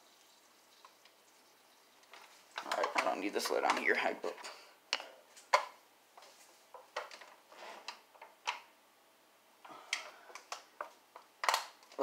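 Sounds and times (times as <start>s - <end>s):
plastic jug and pots clicking: 2.0s - 5.8s.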